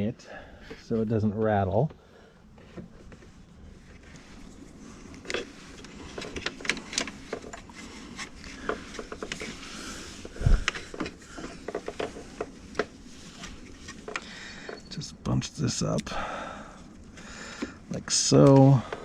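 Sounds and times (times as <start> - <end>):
rustling: 2.5 - 15.0.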